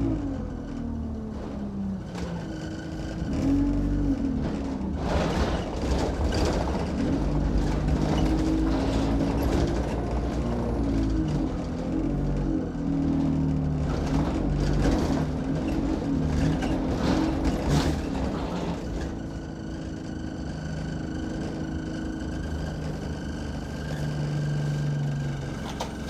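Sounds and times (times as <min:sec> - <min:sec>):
bus diesel engine running: 0:00.0 - 0:26.0.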